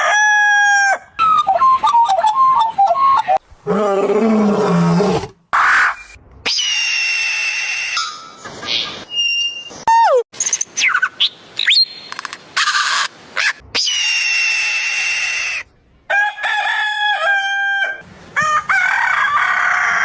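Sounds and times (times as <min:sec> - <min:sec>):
rooster crowing: 0:00.0 - 0:01.1, 0:16.1 - 0:20.0.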